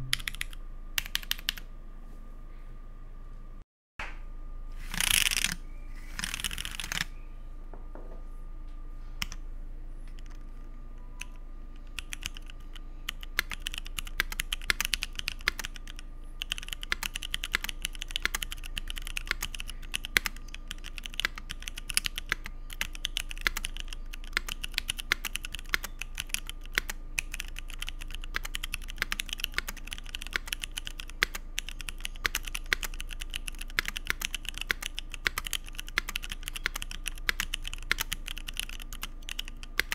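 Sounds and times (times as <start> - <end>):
mechanical keyboard typing: 0.0 - 1.6, 4.9 - 7.1, 11.2 - 39.9.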